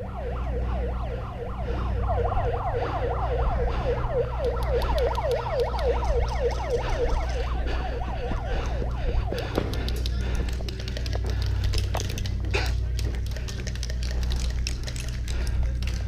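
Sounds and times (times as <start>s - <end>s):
siren yelping: 0.0s - 10.2s
steady low hum: 0.0s - 16.0s.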